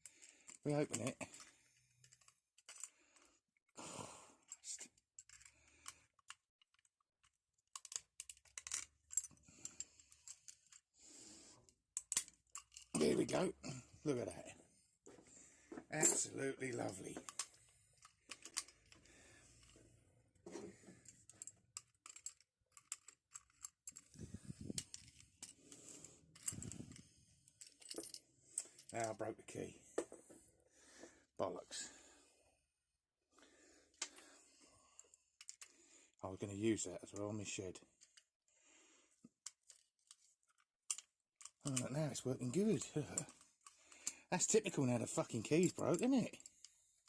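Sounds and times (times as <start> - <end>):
lock mechanism clicks and rattles: 0.0 - 3.3, 4.4 - 10.8, 11.7 - 13.5, 16.0 - 19.8, 21.0 - 29.2, 39.4 - 44.3, 45.2 - 46.7
padlock and key clicking: 12.0 - 12.9
key unlocking padlock: 12.0 - 13.0, 17.2 - 19.0, 21.3 - 25.6, 26.2 - 27.0.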